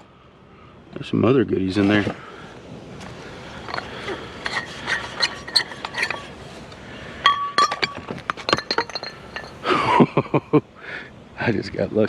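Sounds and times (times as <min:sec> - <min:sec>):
glass globes clinking together: 0:03.5 - 0:06.4, 0:07.2 - 0:09.9.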